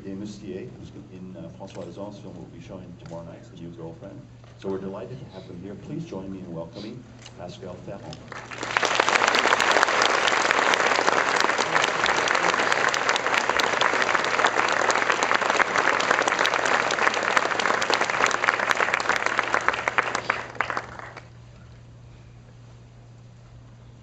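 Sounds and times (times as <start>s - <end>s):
room hum: 0.0s - 24.0s
audience applauding: 8.3s - 21.4s.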